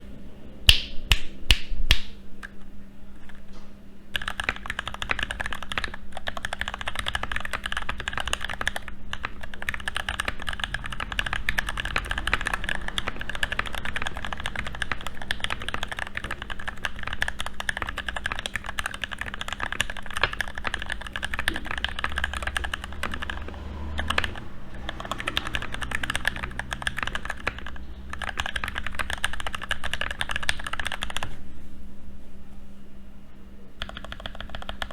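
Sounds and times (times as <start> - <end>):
mechanical keyboard typing: 4.1 - 31.4, 33.8 - 34.9.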